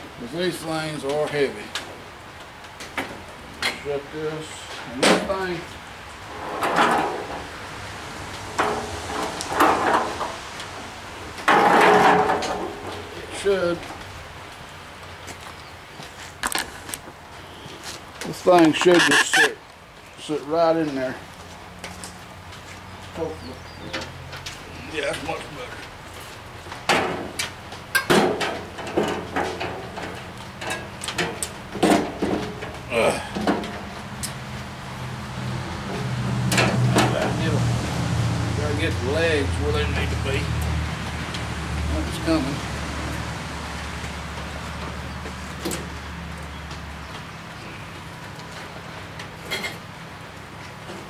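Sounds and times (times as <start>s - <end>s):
metal tool chest scraping and rattling: 6.3s - 7.5s, 11.4s - 13.5s
metallic knocks and clunks: 11.4s - 13.0s, 26.9s - 32.8s.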